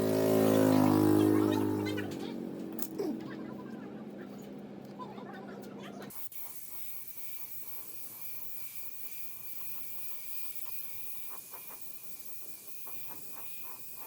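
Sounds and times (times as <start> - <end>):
spray hiss: 6.1 - 14.0.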